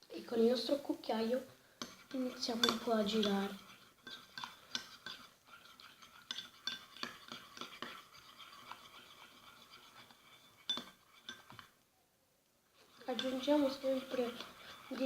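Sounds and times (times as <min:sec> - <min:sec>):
spoon scraping and clinking in cup: 0:01.9 - 0:11.7, 0:12.9 - 0:15.0.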